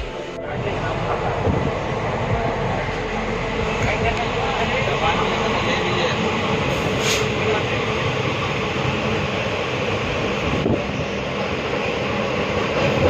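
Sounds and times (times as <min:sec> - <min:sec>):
train wheels rumbling: 0:00.0 - 0:13.0
brief hiss: 0:07.0 - 0:07.3.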